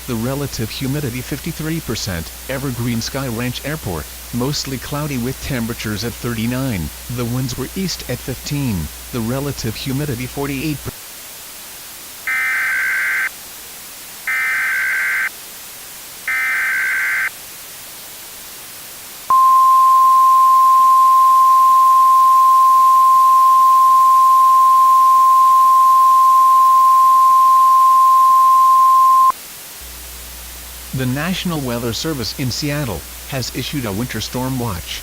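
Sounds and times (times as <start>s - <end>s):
faint radio static hiss: 0.0s - 35.0s
steady warning tone: 19.3s - 29.4s.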